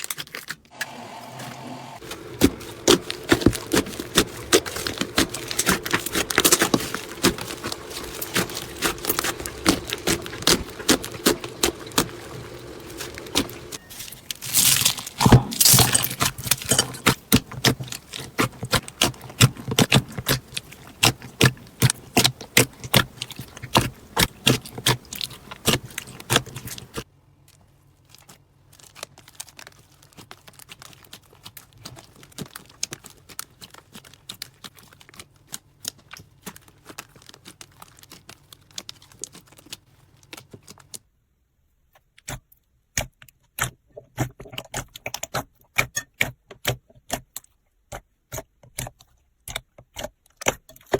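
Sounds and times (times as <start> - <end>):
crunchy slime crackling: 2.0 - 41.0.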